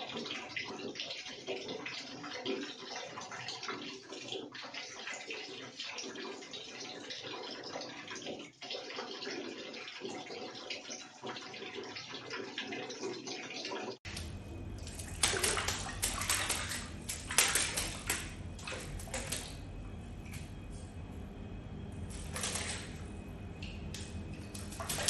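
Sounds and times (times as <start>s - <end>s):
bird fluttering wings in water: 14.1s - 20.9s, 21.9s - 25.0s
water splashing: 14.1s - 25.0s.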